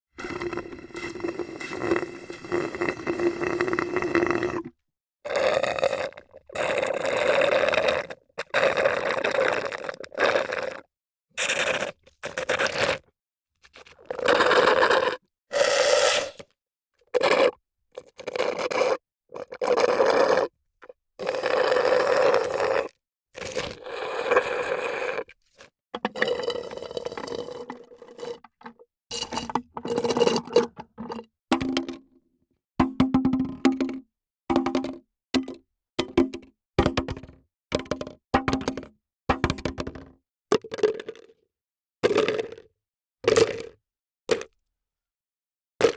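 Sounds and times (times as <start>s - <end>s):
drink sound effects: 26.0s - 32.0s.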